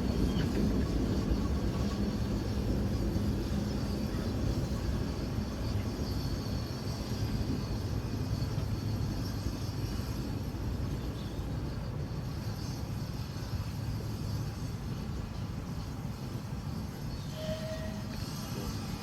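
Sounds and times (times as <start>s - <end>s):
train rumbling along track: 0.0s - 19.0s.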